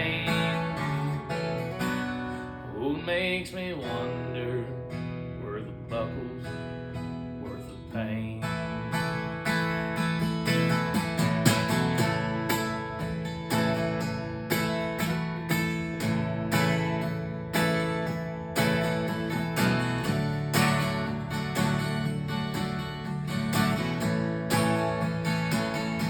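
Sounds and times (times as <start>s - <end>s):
acoustic guitar strumming: 0.0s - 26.0s.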